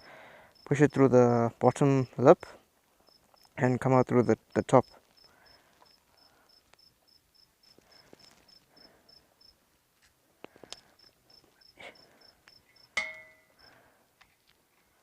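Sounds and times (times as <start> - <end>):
cricket chirping: 0.0 - 1.0, 3.0 - 3.6, 4.8 - 9.6, 10.7 - 13.8.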